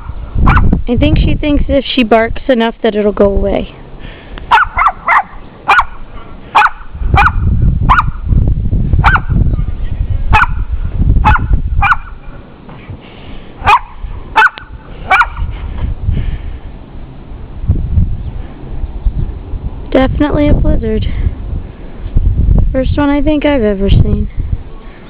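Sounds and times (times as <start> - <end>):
wind on microphone: 0.0 - 25.0
small dog yapping: 0.5 - 0.7, 4.5 - 6.0, 6.6 - 8.2, 9.0 - 9.3, 10.4 - 10.6, 11.3 - 12.2, 13.6 - 15.4.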